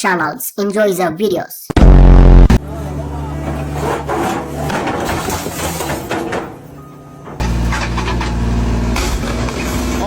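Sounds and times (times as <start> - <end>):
heavy machine humming: 1.8 - 10.0
scraping creaking and knocking: 3.4 - 8.4.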